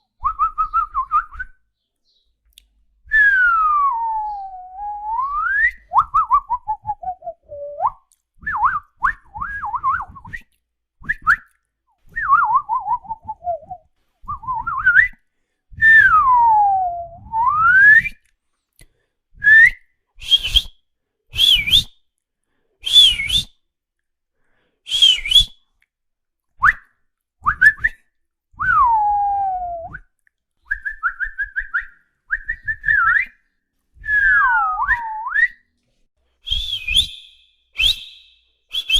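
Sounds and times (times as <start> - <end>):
person whistling: 0.2 - 1.6, 3.1 - 11.5, 12.1 - 15.2, 15.8 - 18.2, 19.4 - 21.9, 22.8 - 23.6, 24.9 - 25.6, 27.4 - 28.0, 28.6 - 35.6, 36.4 - 38.9.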